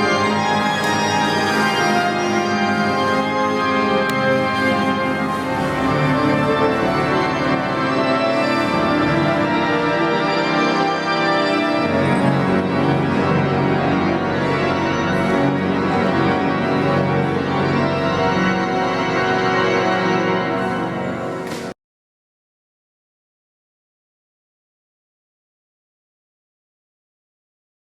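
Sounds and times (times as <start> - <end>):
pipe organ chords: 0.0 - 21.8.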